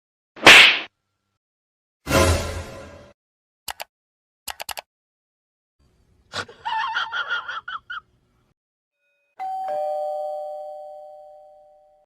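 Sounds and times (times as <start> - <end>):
quick clicks: 3.7 - 3.9, 4.5 - 4.9
two-tone doorbell chime: 9.0 - 12.0.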